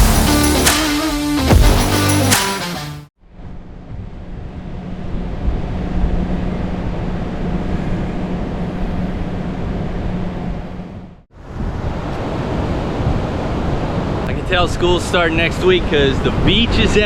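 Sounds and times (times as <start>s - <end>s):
vehicle engine low hum: 3.2s - 14.3s
wind and road noise: 3.2s - 17.0s.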